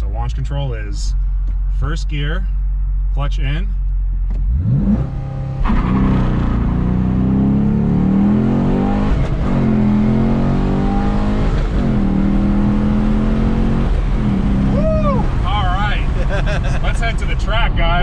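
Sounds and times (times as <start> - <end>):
car engine accelerating hard: 4.3 - 18.0.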